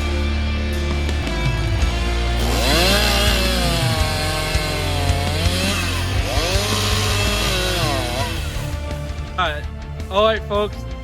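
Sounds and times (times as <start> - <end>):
chainsaw revving cutting wood: 1.8 - 9.1.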